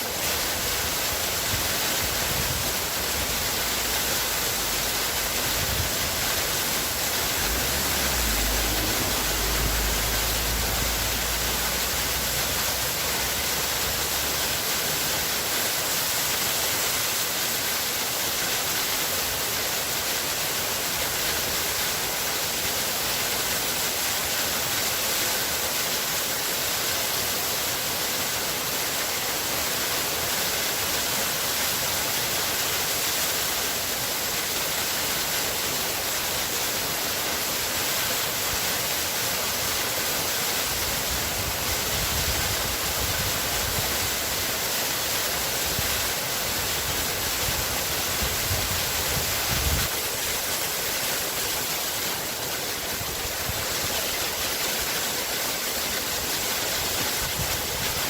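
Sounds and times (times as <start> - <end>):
waterfall rushing: 0.0 - 58.0
low rumble: 2.5 - 14.4.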